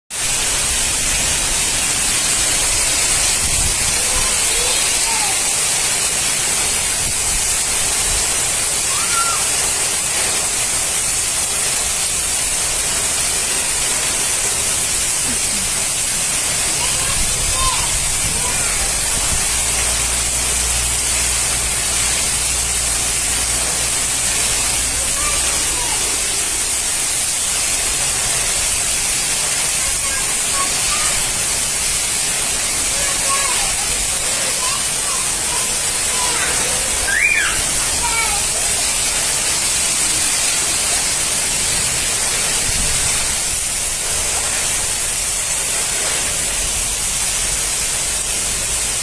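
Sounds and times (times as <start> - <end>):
heavy rain falling: 0.1 - 49.0
low rumble of wind: 0.4 - 4.5, 16.5 - 29.8, 36.8 - 47.2.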